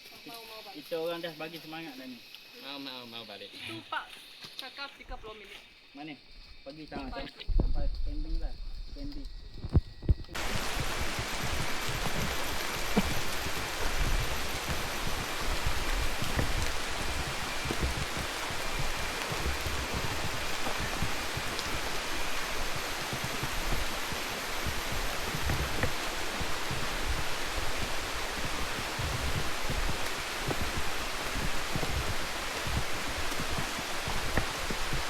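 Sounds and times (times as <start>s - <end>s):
water hissing: 10.4s - 35.0s.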